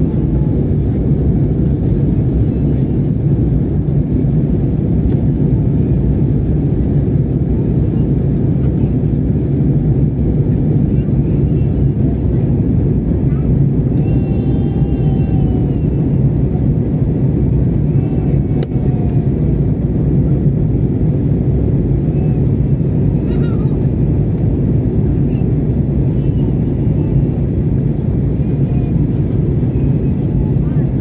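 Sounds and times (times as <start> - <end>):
airplane cabin engine roar: 0.0 - 31.0.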